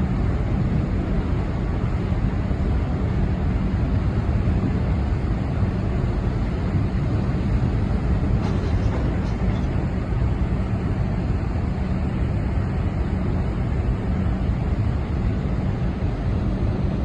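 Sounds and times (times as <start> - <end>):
faint steady hum: 0.0 - 17.0
ship engines rumbling: 3.5 - 17.0.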